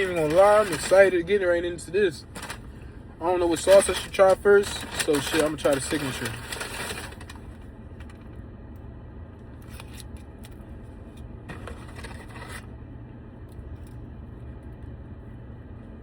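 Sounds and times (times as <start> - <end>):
plastic packaging crinkling: 0.0 - 1.1, 3.4 - 7.5
plastic scrape: 0.0 - 1.2, 2.2 - 2.7, 3.4 - 7.5, 11.5 - 12.7
steady low hum: 0.0 - 16.0.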